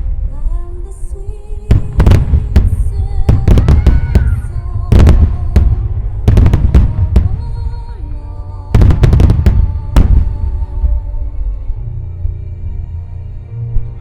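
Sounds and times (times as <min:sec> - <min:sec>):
booming rumble and echo: 0:00.0 - 0:14.0
fireworks cracking: 0:01.7 - 0:07.9, 0:08.8 - 0:10.8.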